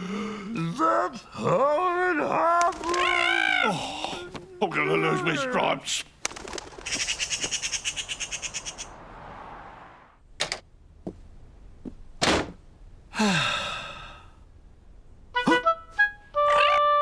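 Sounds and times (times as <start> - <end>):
cartoon birds twittering: 2.6 - 3.9, 5.0 - 9.0.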